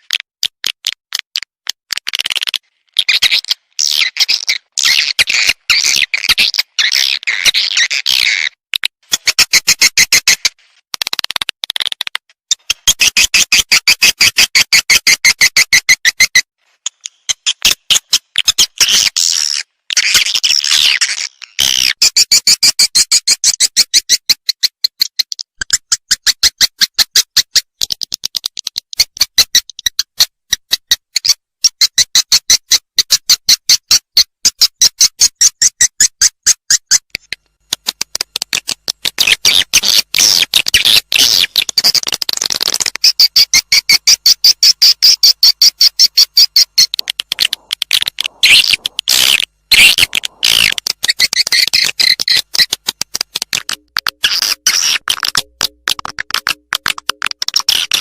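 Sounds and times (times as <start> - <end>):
high twittering bird chirps: 43.0 - 52.8.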